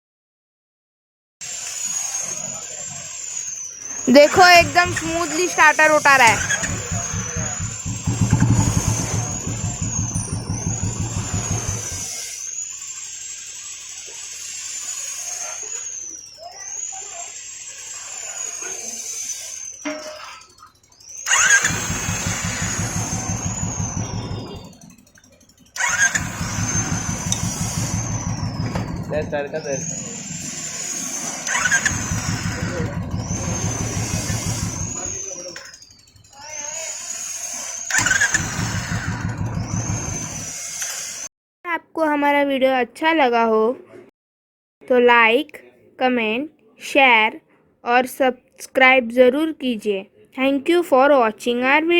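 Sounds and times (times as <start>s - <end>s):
high thin whistling tone: 1.6s - 25.0s, 25.8s - 38.9s
motorcycle engine thumping: 6.2s - 12.1s, 21.3s - 24.9s, 25.8s - 30.2s, 31.5s - 35.4s, 38.0s - 40.5s.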